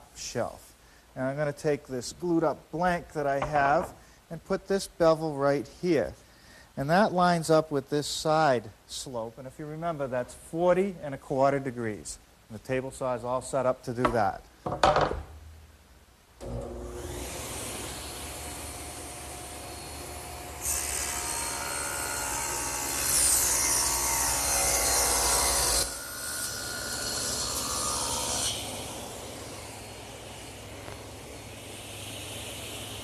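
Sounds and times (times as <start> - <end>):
table saw motor running: 16.4 - 33.0.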